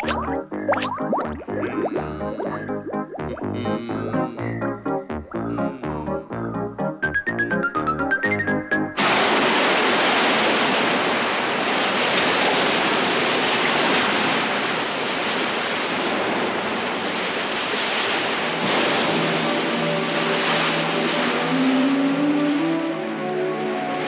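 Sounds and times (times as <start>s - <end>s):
low steady tones: 0.0s - 7.0s
stormy sea surf: 9.0s - 24.0s
wind: 9.0s - 24.0s.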